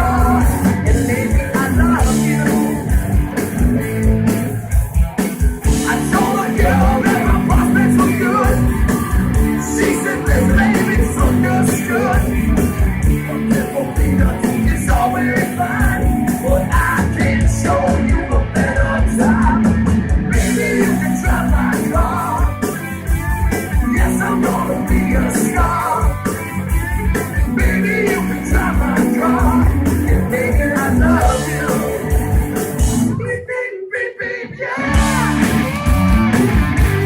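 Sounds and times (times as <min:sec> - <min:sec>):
fast driving drums: 0:00.0 - 0:33.3, 0:34.8 - 0:37.0
bass guitar: 0:00.0 - 0:33.4, 0:34.6 - 0:37.0
distorted electric guitars: 0:00.0 - 0:33.4, 0:34.4 - 0:37.0.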